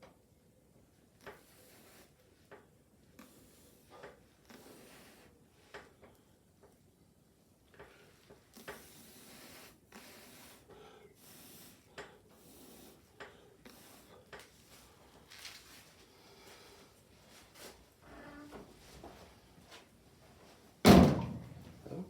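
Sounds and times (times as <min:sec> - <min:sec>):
breath puffs through a straw: 0:01.3 - 0:02.2, 0:03.2 - 0:05.4, 0:07.9 - 0:14.3.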